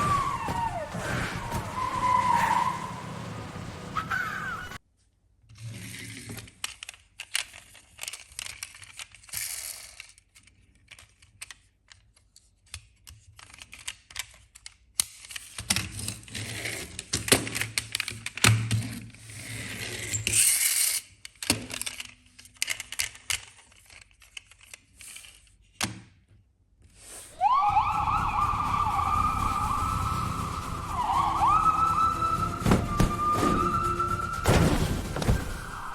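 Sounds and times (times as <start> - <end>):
low hum: 27.4 - 35.9.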